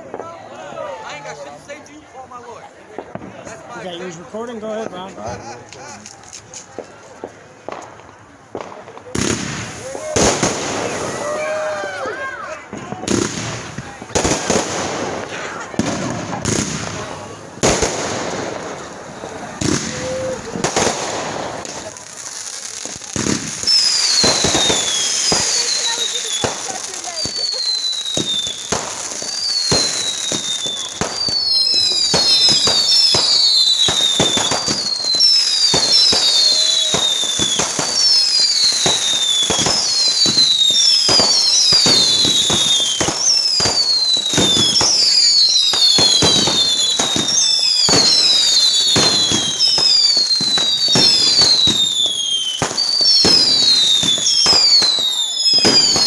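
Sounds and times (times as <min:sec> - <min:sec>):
fireworks bangs and crackles: 0:00.0 - 0:56.0
fireworks whistles sliding down: 0:16.9 - 0:56.0.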